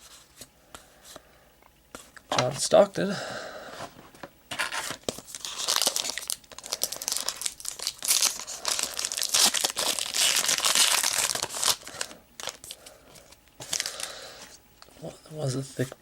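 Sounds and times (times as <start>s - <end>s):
wrapper crinkling and tearing: 4.5s - 14.1s.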